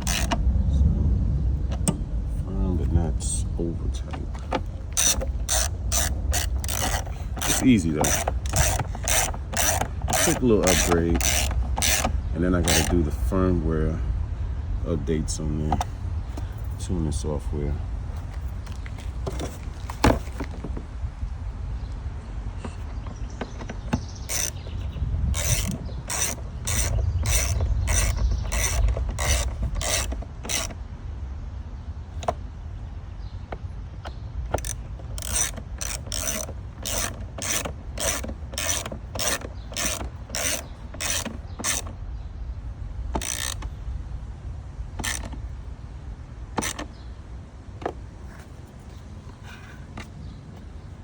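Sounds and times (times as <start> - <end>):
hand ratchet clicking: 0.0 - 0.4, 4.4 - 13.0, 23.4 - 24.7, 25.3 - 30.8, 34.5 - 41.9, 43.2 - 43.7, 45.0 - 45.4, 46.6 - 46.9.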